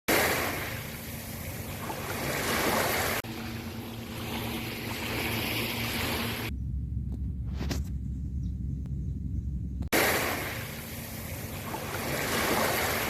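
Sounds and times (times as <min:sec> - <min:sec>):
seaside water rushing: 0:00.1 - 0:06.5, 0:09.9 - 0:13.0.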